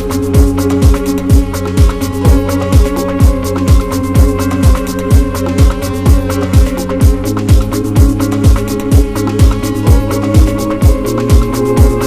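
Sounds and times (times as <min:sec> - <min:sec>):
electronic dance music: 0:00.0 - 0:12.0
steady kick drum: 0:00.0 - 0:12.0.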